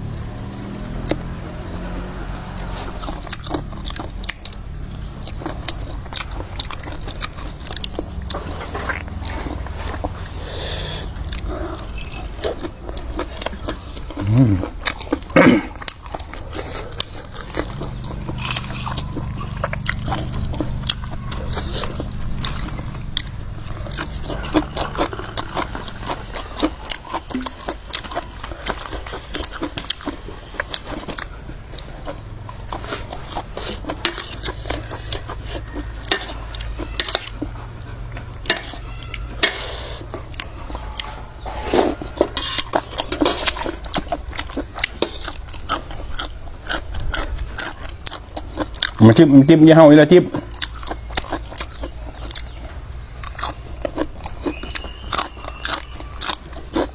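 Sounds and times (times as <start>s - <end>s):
chewing: 0.0s - 56.9s
utensils clinking on dishes: 11.1s - 49.5s.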